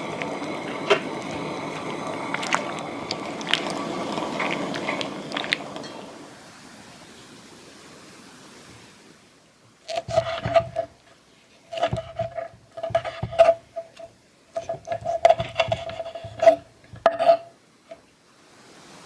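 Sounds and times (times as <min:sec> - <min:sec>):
utensil scraping metal pan: 0:09.8 - 0:17.6.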